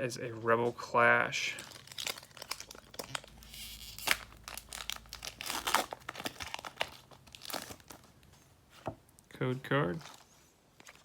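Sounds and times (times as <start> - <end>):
foil wrapper tearing and crinkling: 1.6 - 8.1.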